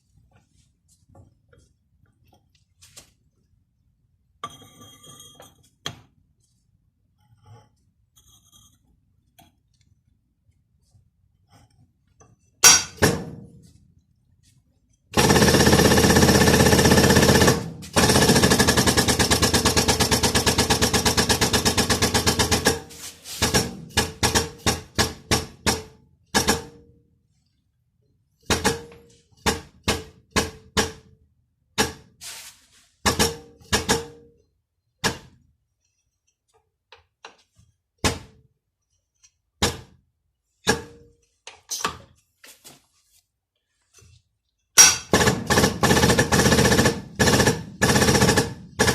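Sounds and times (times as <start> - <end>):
pneumatic tool hammering metal: 12.6 - 13.5, 15.2 - 26.8, 28.4 - 31.1, 33.0 - 34.2, 44.8 - 48.9.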